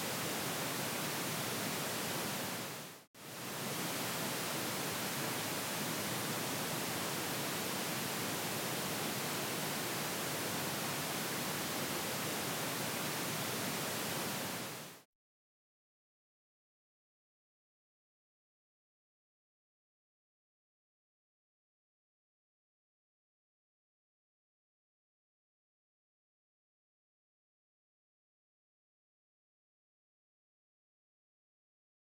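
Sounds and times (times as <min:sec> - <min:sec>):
pink noise hiss: 0:00.0 - 0:15.0.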